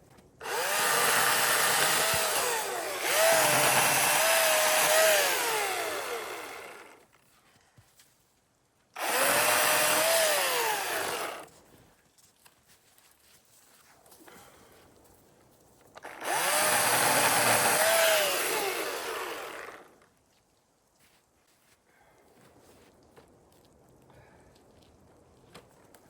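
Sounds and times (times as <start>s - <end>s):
battery chainsaw whine: 0.4s - 7.0s, 9.0s - 11.5s, 16.0s - 20.0s.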